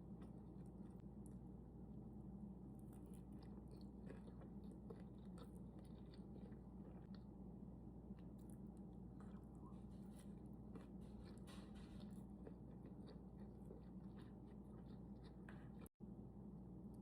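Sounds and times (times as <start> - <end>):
quiet chewing: 0.1 - 1.5, 2.7 - 7.5, 8.1 - 15.9.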